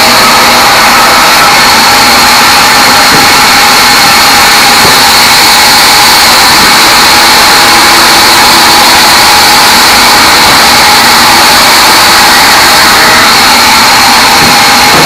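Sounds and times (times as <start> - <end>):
bandsaw mill sawing log: 6.2 - 15.0.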